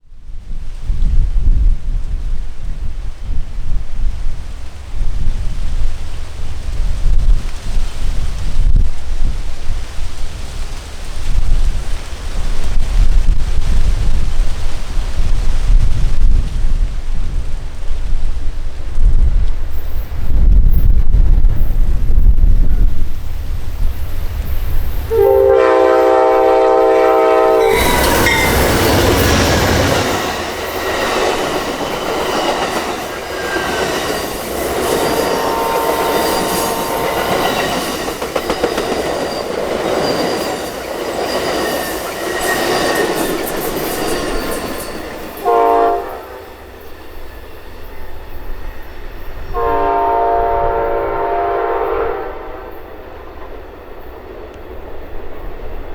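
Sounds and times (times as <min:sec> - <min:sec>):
train wheels clacking on rails: 0:04.6 - 0:49.6
locomotive horn: 0:25.1 - 0:30.3, 0:35.0 - 0:37.6, 0:45.4 - 0:46.6, 0:49.5 - 0:52.9.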